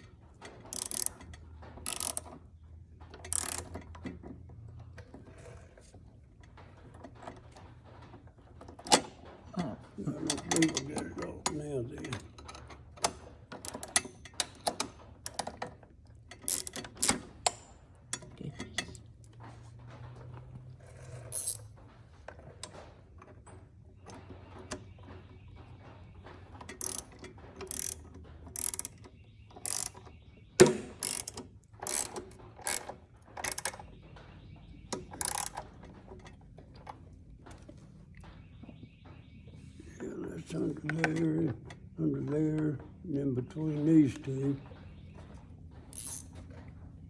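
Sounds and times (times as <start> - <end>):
ratchet wrench clicking: 0.7 - 1.2, 1.8 - 2.3, 3.3 - 3.7, 16.5 - 17.6, 26.8 - 27.1, 27.7 - 28.0, 28.6 - 29.0, 29.6 - 30.0, 30.6 - 33.8, 35.2 - 35.6, 45.9 - 46.3.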